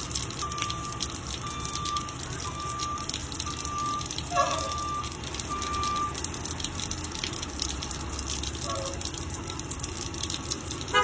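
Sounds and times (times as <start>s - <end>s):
rain patter: 0.0s - 11.0s
backup alarm beeping: 0.4s - 6.2s.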